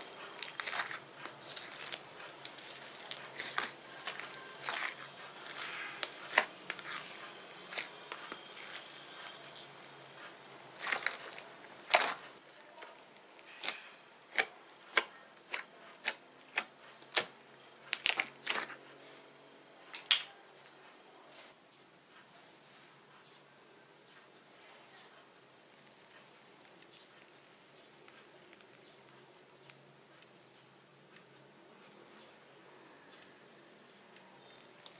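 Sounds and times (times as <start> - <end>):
slime popping and crackling: 0.0 - 18.8, 34.4 - 34.9.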